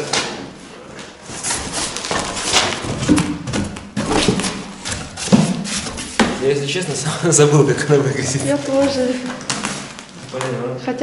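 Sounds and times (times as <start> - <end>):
cardboard rustling: 0.9 - 6.6, 8.2 - 10.5.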